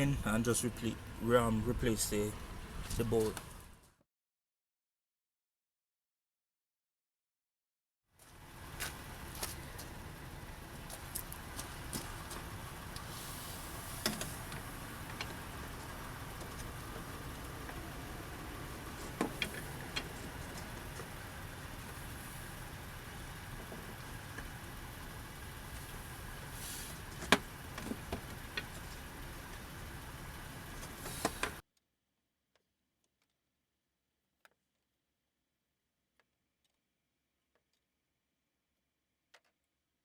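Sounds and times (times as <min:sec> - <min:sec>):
steady low rumble: 0:00.0 - 0:03.8, 0:08.4 - 0:31.1.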